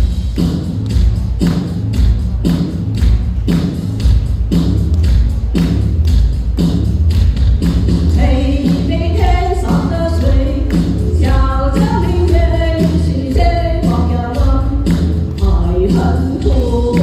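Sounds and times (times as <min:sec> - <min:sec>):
musical accompaniment with steady beat: 0:00.0 - 0:17.0
person singing live: 0:08.2 - 0:17.0.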